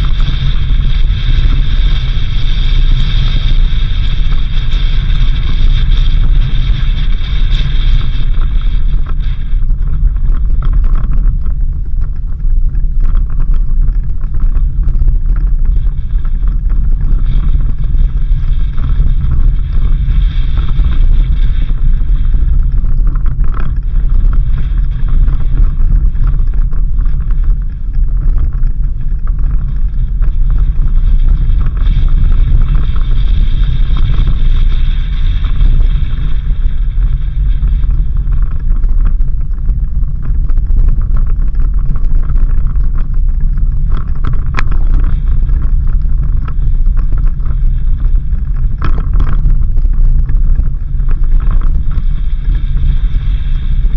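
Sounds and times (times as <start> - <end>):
vehicle driving on dirt road: 0.0 - 53.9
wind buffeting microphone: 0.0 - 53.9.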